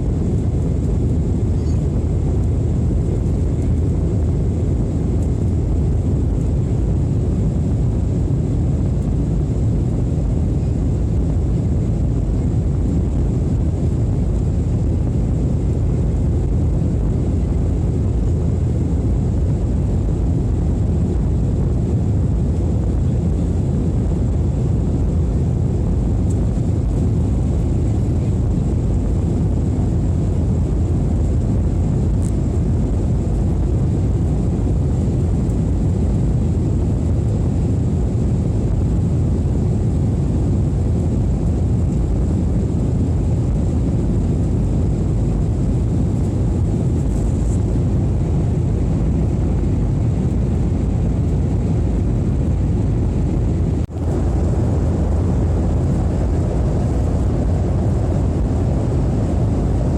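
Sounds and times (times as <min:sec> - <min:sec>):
airliner cabin engine rush: 0:00.0 - 0:59.9
faint high whine: 0:52.4 - 0:59.9.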